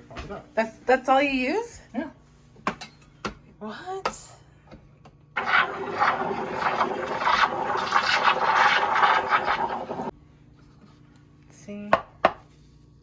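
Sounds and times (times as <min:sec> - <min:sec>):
milk frother running: 0:05.4 - 0:10.1.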